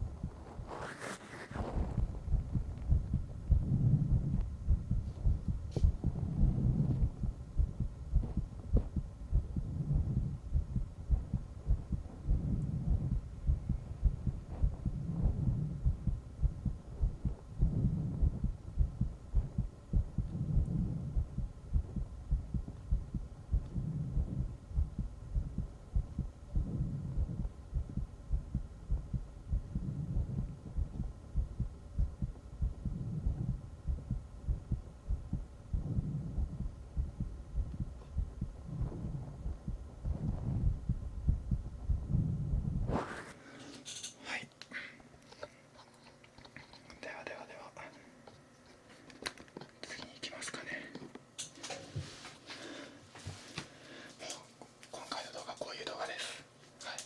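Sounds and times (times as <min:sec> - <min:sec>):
heartbeat thumps: 0:00.0 - 0:00.9, 0:01.5 - 0:43.3.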